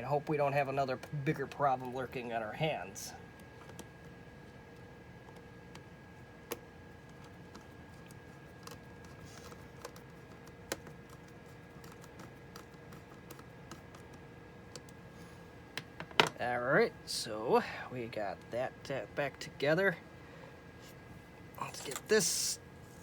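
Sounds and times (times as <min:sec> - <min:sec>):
faint steady hum: 0:00.0 - 0:23.0
plastic laptop parts clicking: 0:06.5 - 0:15.0.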